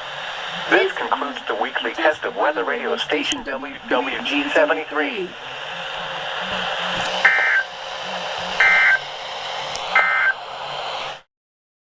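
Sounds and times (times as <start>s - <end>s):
radio static: 0.0s - 11.2s
digital data screech bursts: 6.4s - 9.1s, 9.9s - 10.4s.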